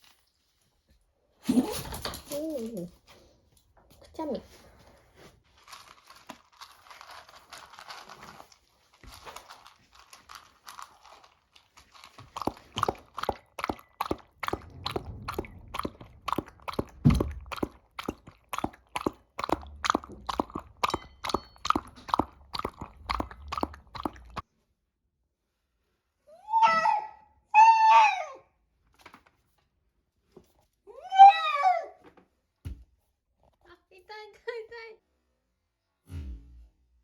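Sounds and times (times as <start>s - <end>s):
dog crunching food: 5.6s - 24.4s.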